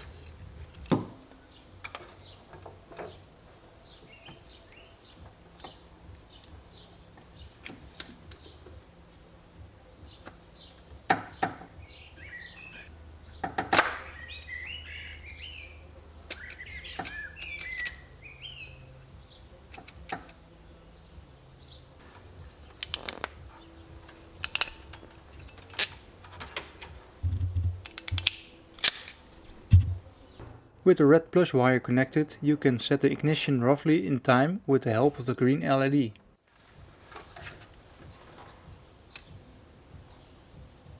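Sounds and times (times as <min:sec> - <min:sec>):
tools clicking and knocking: 0:00.0 - 0:03.2, 0:22.7 - 0:23.4, 0:24.0 - 0:30.0
birds twittering: 0:00.0 - 0:30.4, 0:37.0 - 0:40.9.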